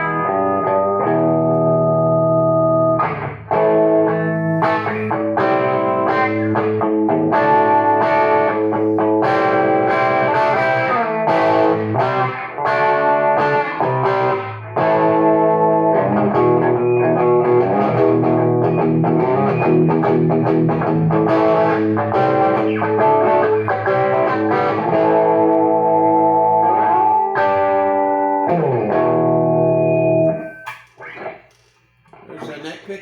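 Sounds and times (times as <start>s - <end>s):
distorted electric guitar: 0.0s - 32.6s.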